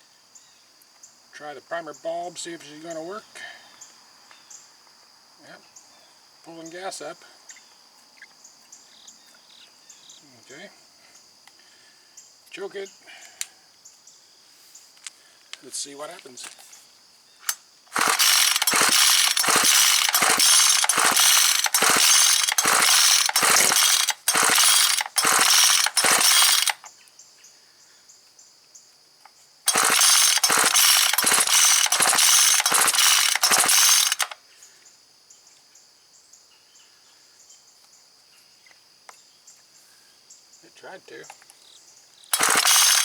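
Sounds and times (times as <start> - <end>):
trimmer recoil starter pulls: 17.9 - 26.9, 29.7 - 34.4, 42.3 - 43.0.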